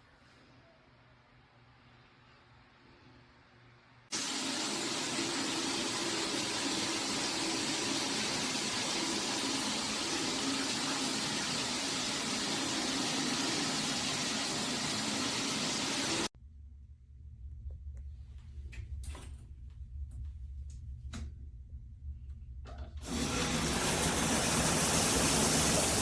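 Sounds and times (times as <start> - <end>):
shower spraying water: 4.1 - 16.3, 23.0 - 26.0.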